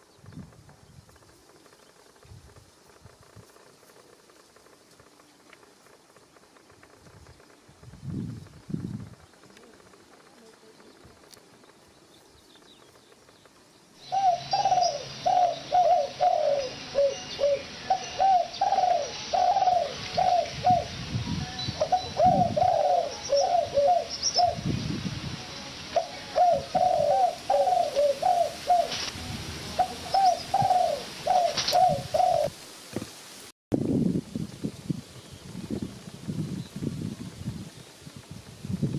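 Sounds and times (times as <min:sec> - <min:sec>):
pigeons cooing: 0:14.0 - 0:21.0, 0:21.7 - 0:24.7, 0:26.0 - 0:32.6.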